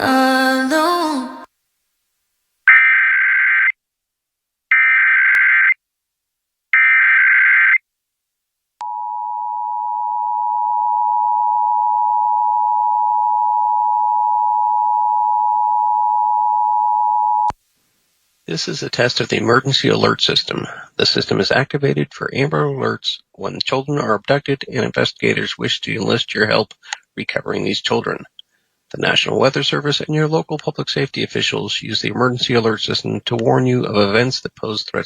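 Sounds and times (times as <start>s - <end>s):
song on radio: 0.0s - 1.5s.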